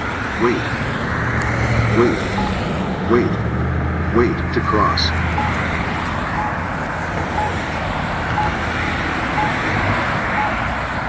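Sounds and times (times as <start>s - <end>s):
road traffic: 0.0s - 11.0s
pedestrian signal beeps: 1.9s - 3.3s, 4.2s - 5.7s, 6.3s - 6.6s, 7.4s - 7.7s, 8.3s - 8.6s, 9.4s - 10.7s.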